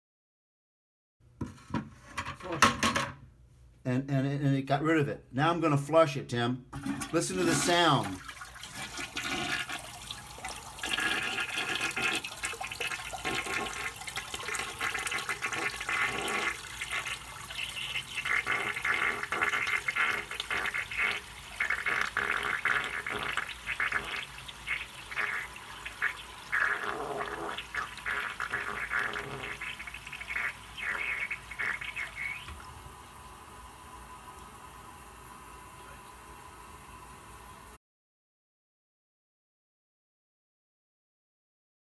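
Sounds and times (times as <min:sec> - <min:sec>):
toilet flushing: 0:06.7 - 0:37.8.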